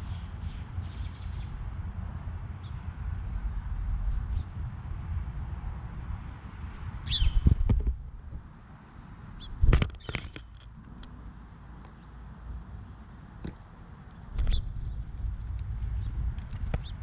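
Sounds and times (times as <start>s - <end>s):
steady low rumble: 0.0s - 9.8s, 10.7s - 17.0s
high bird chirps: 7.0s - 7.5s.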